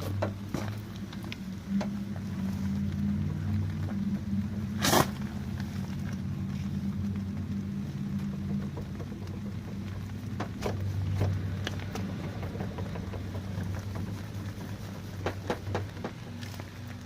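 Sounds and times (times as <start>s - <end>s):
low wheel bearing drone: 0.0s - 17.0s
clicks and rattles: 8.1s - 17.0s.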